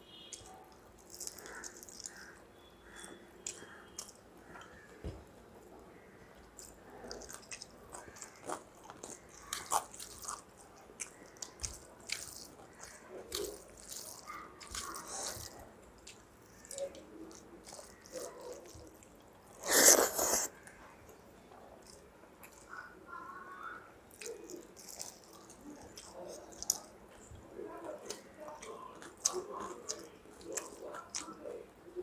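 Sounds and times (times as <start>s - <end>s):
chewing and biting food: 0.3s - 4.8s, 6.5s - 20.5s, 24.1s - 31.6s
wet squishing and smacks: 6.6s - 19.0s.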